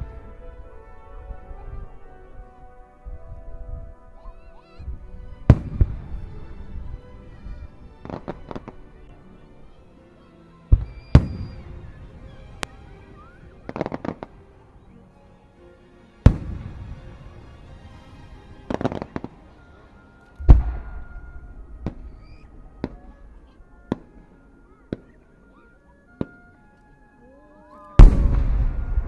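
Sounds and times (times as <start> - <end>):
light firework pops: 10.7 - 11.6, 12.6 - 14.4, 18.7 - 19.4
firework crackling: 17.8 - 24.3, 28.0 - 29.0
firework shells booming: 20.4 - 24.2, 28.0 - 29.0.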